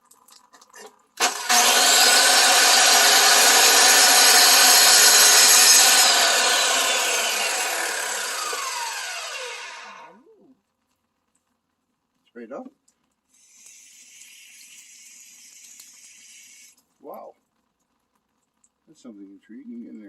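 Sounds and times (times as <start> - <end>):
electric cutter cutting rock: 1.2 - 10.2.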